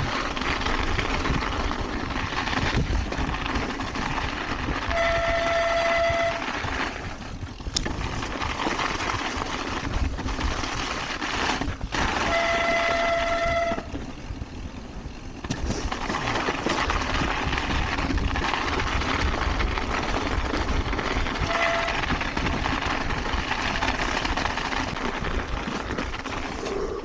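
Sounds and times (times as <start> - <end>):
bike brake squealing: 4.8 - 6.8, 12.0 - 14.0, 21.4 - 22.3.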